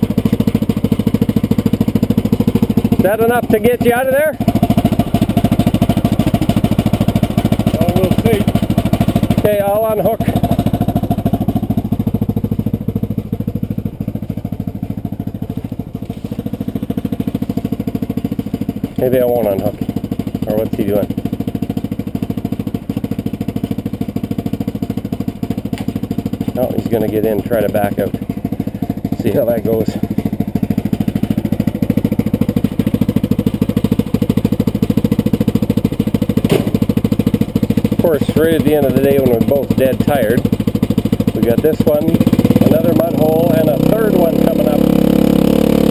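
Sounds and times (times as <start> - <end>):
single-cylinder engine idling: 0.0 - 45.9
brief knock: 36.5 - 36.8.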